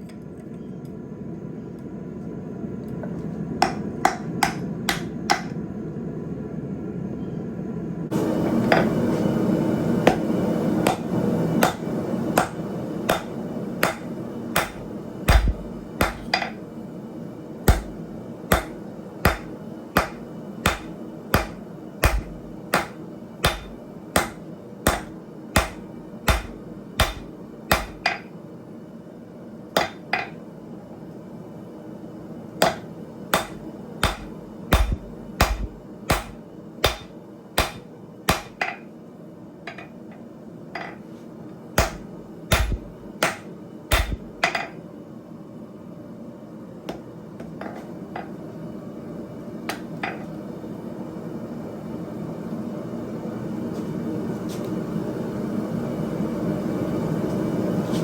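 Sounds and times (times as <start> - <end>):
hammer striking steel on anvil: 3.6 - 5.6, 10.1 - 16.6, 17.7 - 28.3, 29.8 - 30.4, 32.6 - 38.8, 41.8 - 44.7.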